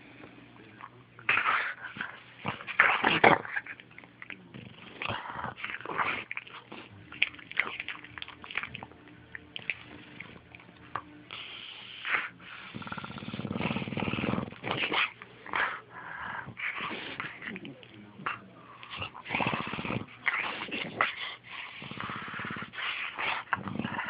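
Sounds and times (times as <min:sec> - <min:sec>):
dog snoring: 0:04.3 - 0:07.2, 0:11.3 - 0:24.0
dog breathing noises: 0:11.3 - 0:24.0.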